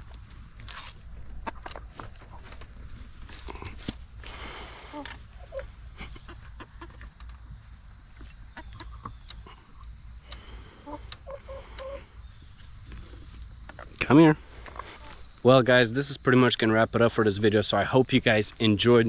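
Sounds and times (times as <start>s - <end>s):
insects trilling: 0.0s - 19.0s
hens clucking softly: 4.7s - 14.0s.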